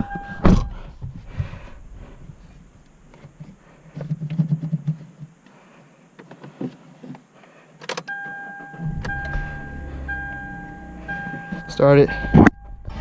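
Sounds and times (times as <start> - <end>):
electronic warning chime: 0.0 - 0.6, 8.1 - 13.0
car engine starting and idling: 8.5 - 13.0.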